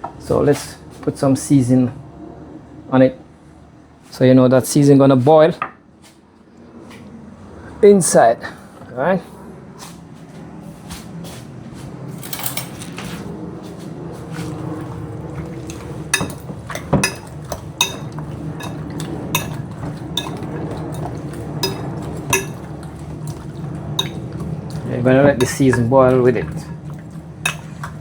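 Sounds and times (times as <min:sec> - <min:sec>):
steady low hum: 0:13.3 - 0:28.0
kitchenware clinking: 0:14.8 - 0:28.0.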